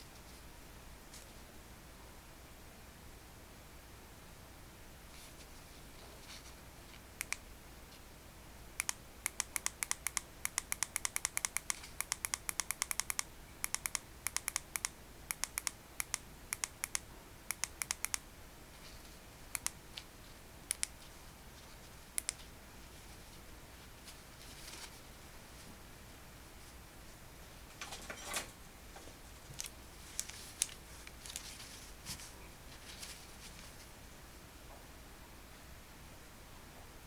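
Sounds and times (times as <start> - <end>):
small sharp clicks: 7.2 - 7.4, 8.8 - 18.2, 19.5 - 20.1, 20.7 - 21.0, 22.2 - 22.5.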